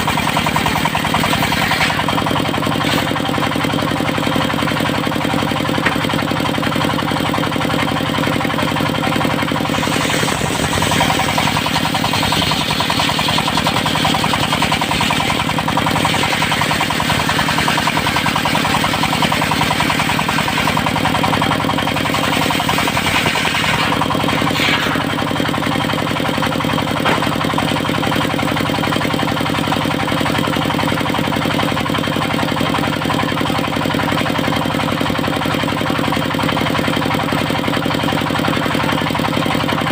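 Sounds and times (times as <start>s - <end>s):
circular saw blade cutting wood: 0.0s - 3.4s, 9.1s - 25.8s
sawmill engine running: 0.0s - 39.9s.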